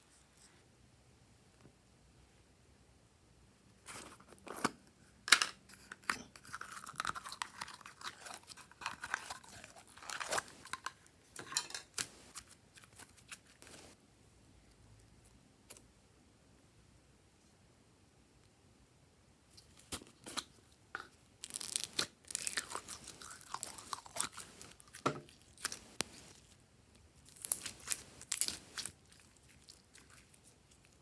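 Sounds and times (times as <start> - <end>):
slime squeezed by hand crackling: 21.4 - 26.5.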